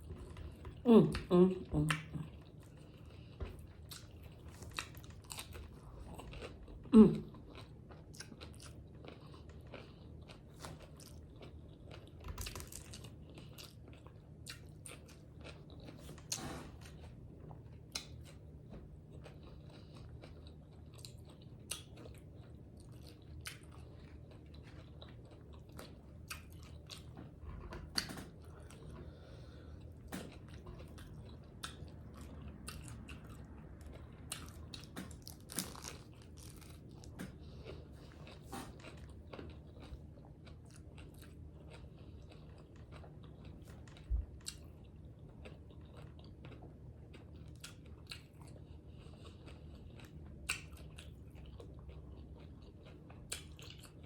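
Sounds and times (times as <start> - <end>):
faint steady hum: 0.0 - 54.0
person chewing crunchy tacos: 0.0 - 54.0.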